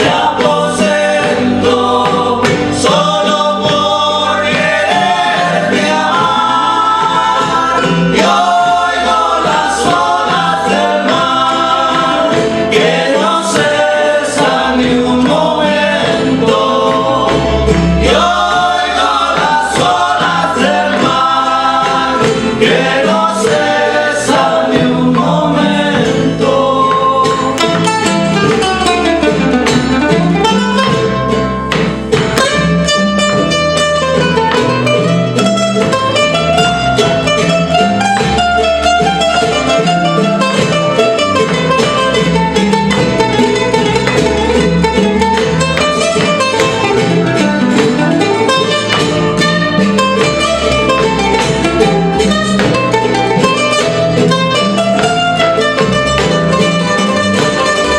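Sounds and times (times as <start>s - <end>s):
voices singing: 0.0s - 28.6s
picked guitar melody: 0.0s - 57.9s
plucked bass: 0.0s - 57.9s
strummed guitars: 0.0s - 57.9s.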